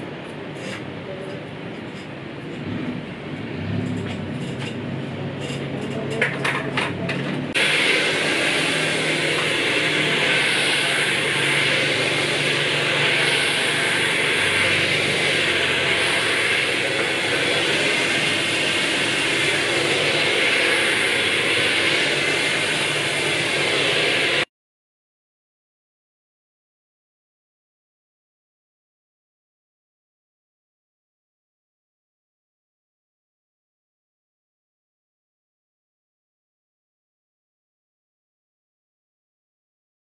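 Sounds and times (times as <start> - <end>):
hair dryer blowing: 7.5 - 24.5.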